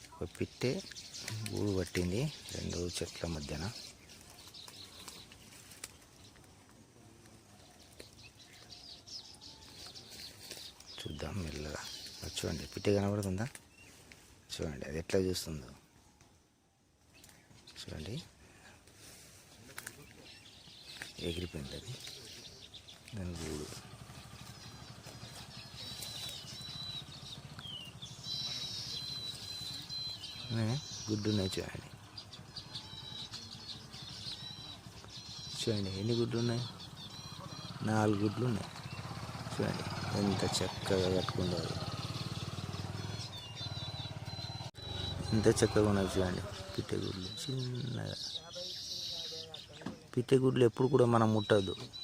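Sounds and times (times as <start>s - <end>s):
small bird chirps: 19.6s - 52.0s
distant animal call: 21.7s - 50.1s.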